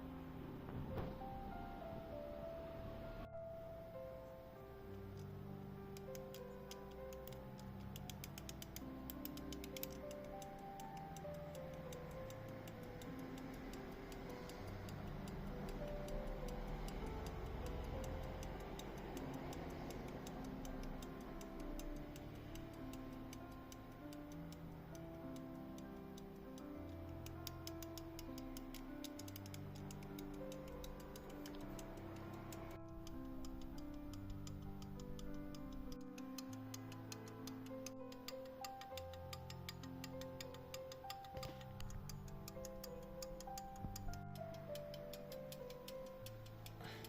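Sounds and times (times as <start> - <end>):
background music held notes: 0.0 - 47.0
pocket watch ticking: 5.9 - 47.0.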